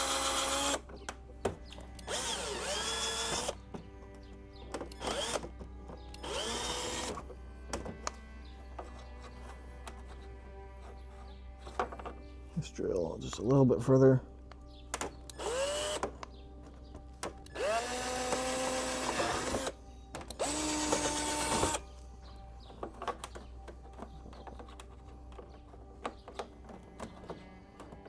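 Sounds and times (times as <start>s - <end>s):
power drill whining: 0.0s - 12.2s, 15.0s - 16.4s, 17.3s - 22.0s
faint clicks and handling knocks: 22.6s - 28.0s.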